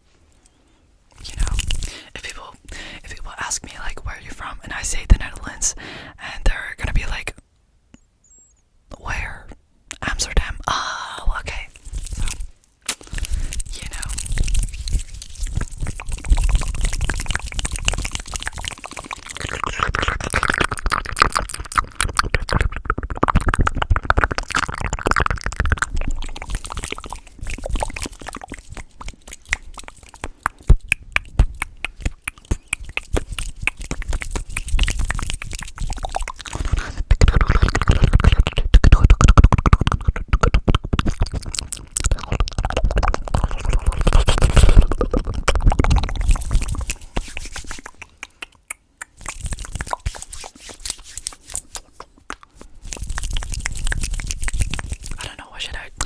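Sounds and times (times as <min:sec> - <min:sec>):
lip smacks: 0:00.3 - 0:03.8, 0:11.2 - 0:56.0
wet tongue clicks: 0:00.4 - 0:05.6, 0:08.9 - 0:10.5, 0:11.3 - 0:56.0.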